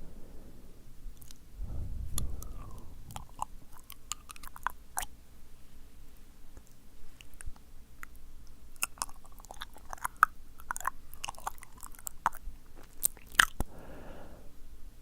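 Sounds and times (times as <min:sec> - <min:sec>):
breathy hiss: 0:00.0 - 0:04.1, 0:13.7 - 0:14.8
tongue and lip clicks: 0:01.2 - 0:05.2, 0:06.5 - 0:13.7.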